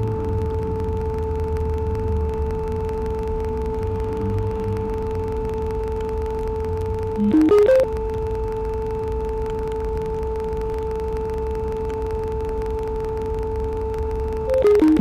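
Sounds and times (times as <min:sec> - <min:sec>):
low background rumble: 0:00.0 - 0:15.0
steady pure tone: 0:00.0 - 0:15.0.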